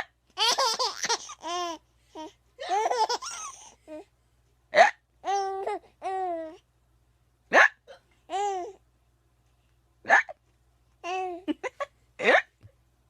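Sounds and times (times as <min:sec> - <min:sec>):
baby laughing: 0:00.4 - 0:03.8.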